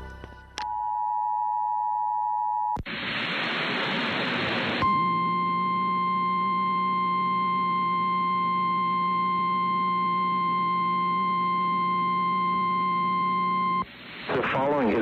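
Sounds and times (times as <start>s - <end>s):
steady alarm beep: 4.8s - 13.8s
low hum: 4.8s - 15.0s.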